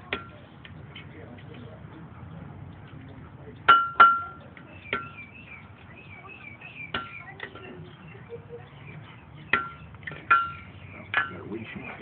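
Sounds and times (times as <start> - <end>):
hammer striking iron on anvil: 3.7 - 5.2.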